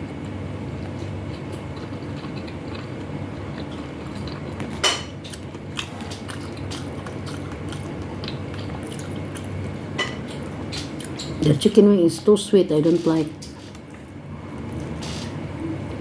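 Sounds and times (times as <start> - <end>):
low background hum: 0.0 - 16.0
chewing: 0.8 - 11.8, 13.0 - 15.2
cutlery clinking against plate: 4.8 - 5.4, 10.0 - 11.4.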